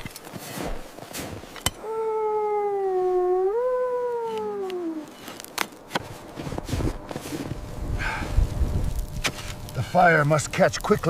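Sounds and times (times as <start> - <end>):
wavering animal call: 1.8 - 5.4.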